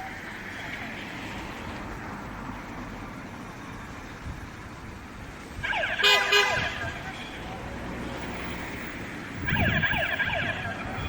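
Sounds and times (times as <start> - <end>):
warning alarm siren sweeps: 5.6 - 7.5, 9.3 - 11.0.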